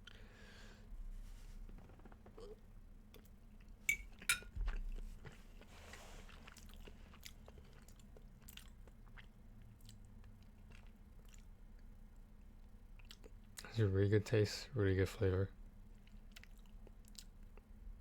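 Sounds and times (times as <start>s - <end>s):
person chewing and smacking lips: 6.3s - 13.7s, 15.9s - 17.8s.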